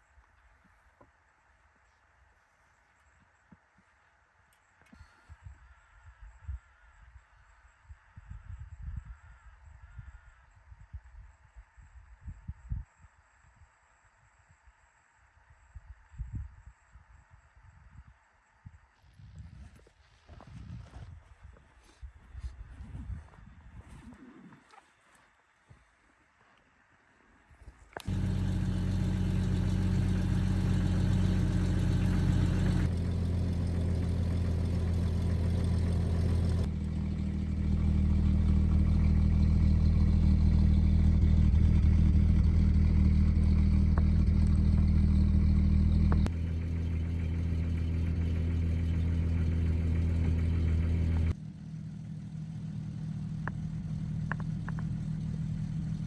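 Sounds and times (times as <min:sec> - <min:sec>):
vehicle engine humming: 0:28.0 - 0:56.0.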